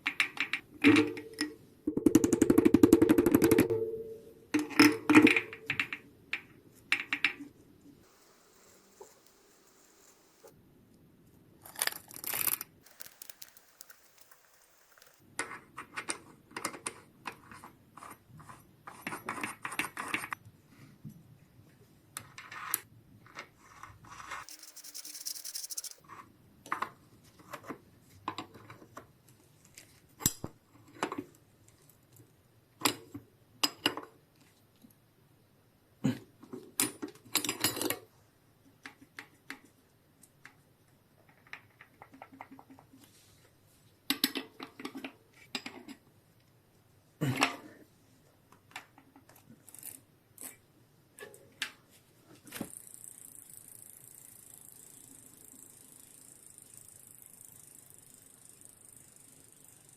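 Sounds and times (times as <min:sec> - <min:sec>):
short hissing noise: 0:08.0 - 0:10.5, 0:24.4 - 0:26.0.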